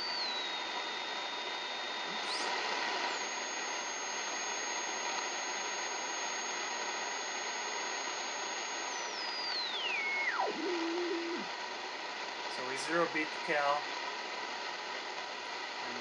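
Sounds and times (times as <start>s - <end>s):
radio speaker hiss: 2.1s - 3.1s, 10.2s - 11.5s.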